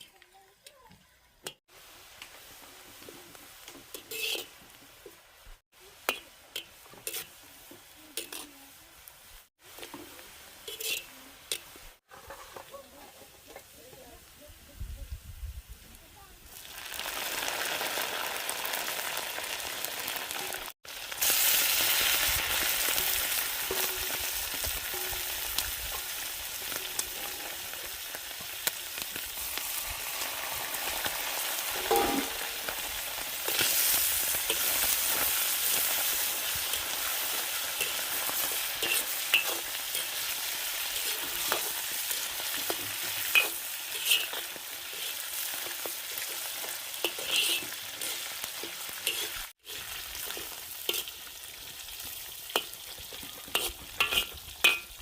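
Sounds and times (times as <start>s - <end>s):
food sizzling in hot oil: 0.0s - 14.0s, 15.2s - 55.0s
utensil scraping and knocking pan: 31.8s - 32.5s, 47.0s - 48.2s, 53.4s - 54.9s.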